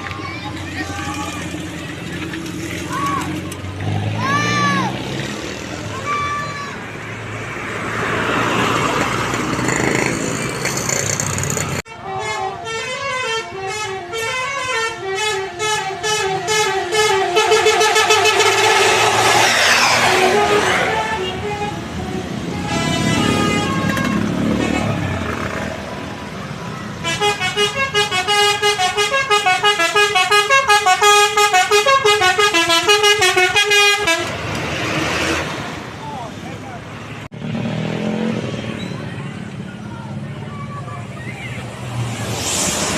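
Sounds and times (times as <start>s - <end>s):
loud noisy vehicle: 0.0s - 42.9s
multi-tone bus horn melody: 11.8s - 25.6s, 26.9s - 34.5s
rushing noise: 17.8s - 23.4s, 41.1s - 42.9s.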